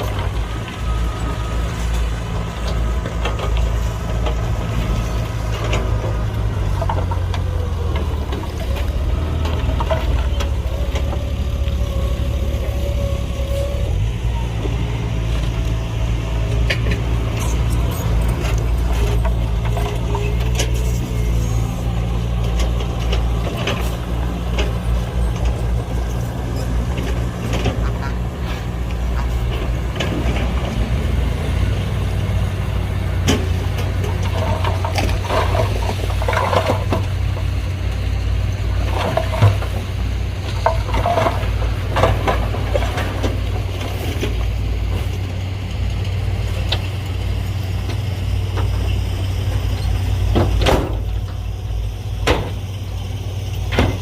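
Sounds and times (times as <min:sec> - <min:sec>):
heavy diesel engine running: 0:00.0 - 0:54.0.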